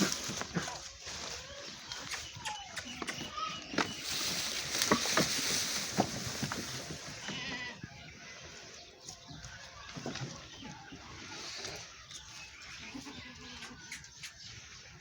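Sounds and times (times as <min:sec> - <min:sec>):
goat bleating: 0:07.2 - 0:07.8.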